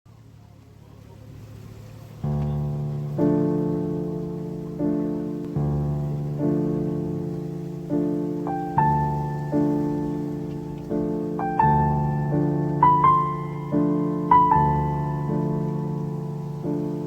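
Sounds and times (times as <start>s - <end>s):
slow piano chords: 1.6s - 17.0s.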